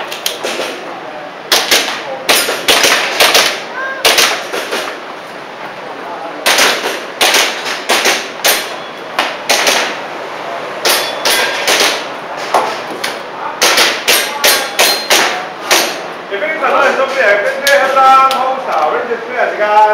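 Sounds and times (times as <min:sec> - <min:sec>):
background noise: 0:00.0 - 0:19.9
airsoft handgun shots: 0:01.5 - 0:05.0, 0:06.4 - 0:08.8, 0:09.4 - 0:10.0, 0:10.8 - 0:12.1.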